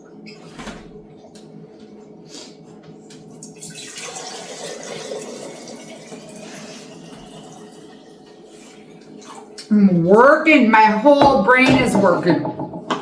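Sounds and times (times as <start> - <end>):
liquid pouring into container: 3.6 - 8.0.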